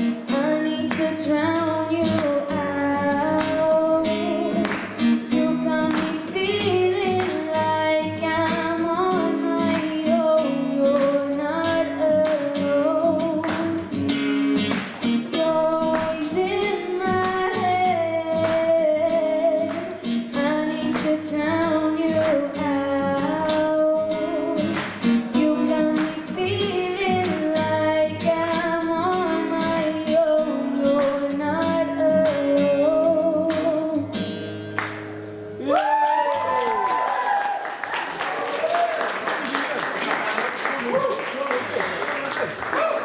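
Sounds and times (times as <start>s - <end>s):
woman singing: 0.0s - 14.2s, 15.1s - 34.3s
acoustic guitar strumming: 0.0s - 35.6s.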